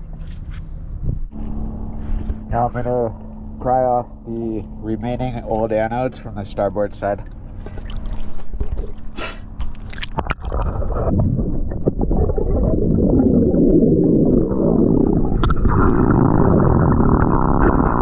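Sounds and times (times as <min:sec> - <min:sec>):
dense low rumble: 0:00.0 - 0:18.0
underwater gurgling and bubbling: 0:06.8 - 0:18.0.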